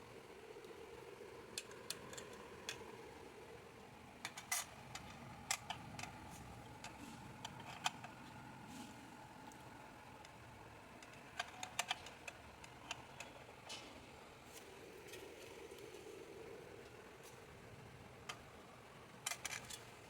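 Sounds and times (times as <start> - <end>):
computer fans humming: 0.0 - 20.0.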